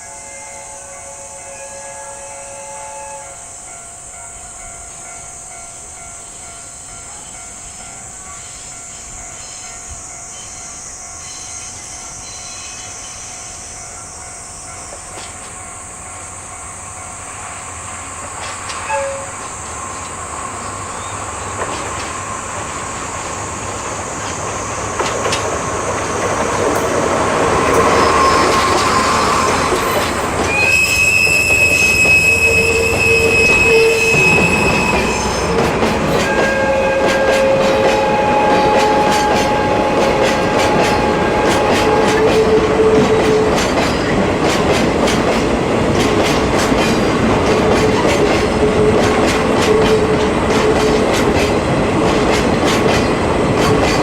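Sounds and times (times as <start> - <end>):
train wheels squealing: 0.0 - 45.4
freight train passing: 0.0 - 54.0
wheels clattering over rail joints: 18.3 - 54.0.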